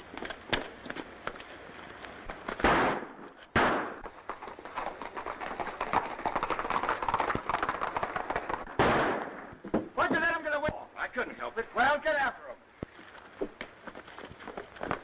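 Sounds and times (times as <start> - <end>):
gunshots with echo: 2.6 - 4.0, 8.6 - 9.5
rapid clatter of small knocks: 4.0 - 8.8.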